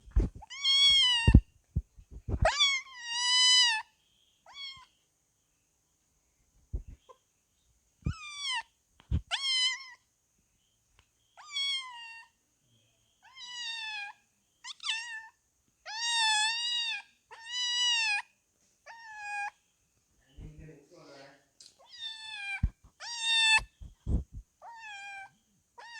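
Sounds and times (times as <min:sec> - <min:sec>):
cat meowing: 0:00.3 - 0:01.5, 0:02.3 - 0:03.8, 0:04.5 - 0:04.9, 0:08.0 - 0:10.0, 0:11.4 - 0:12.3, 0:13.2 - 0:18.3, 0:18.9 - 0:19.6, 0:21.8 - 0:25.9.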